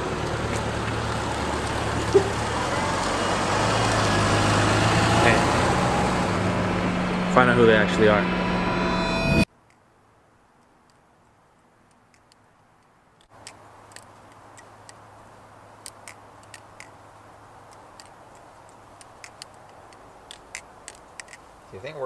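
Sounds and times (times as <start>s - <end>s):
car hum: 0.0s - 9.5s
sharp clicks: 15.8s - 17.0s, 17.7s - 21.5s
faint ticks: 17.6s - 21.5s.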